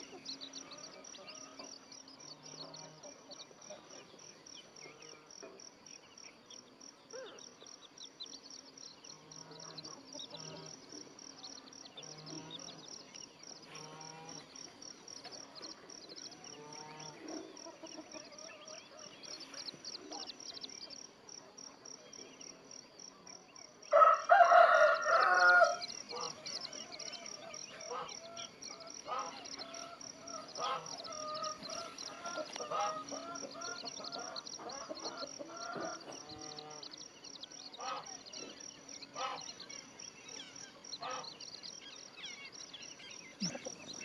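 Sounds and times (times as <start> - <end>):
faint chirps and peeps: 0.0 - 44.0
rooster crowing: 23.9 - 36.9
insect trilling: 24.6 - 44.0.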